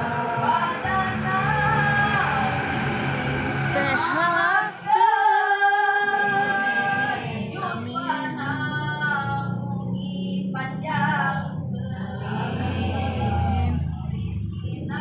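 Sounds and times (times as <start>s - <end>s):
person singing: 0.0s - 11.3s
low musical accompaniment: 0.0s - 15.0s.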